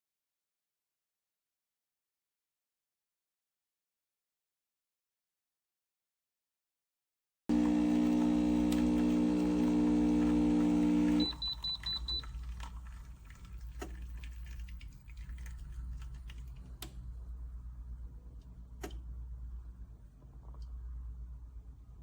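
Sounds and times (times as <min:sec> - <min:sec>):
espresso machine pump humming: 0:07.5 - 0:12.2.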